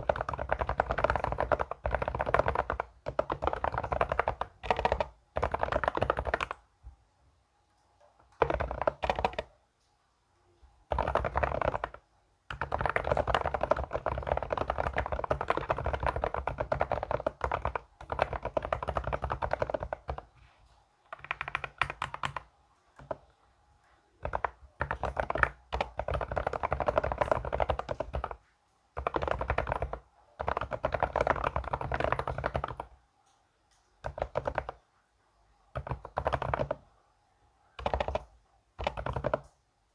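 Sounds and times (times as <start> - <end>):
fast keyboard typing: 0.0 - 6.6, 8.2 - 9.6, 10.9 - 20.4, 21.0 - 23.3, 24.2 - 28.4, 29.0 - 33.0, 34.0 - 34.8, 35.7 - 36.9, 37.8 - 39.6.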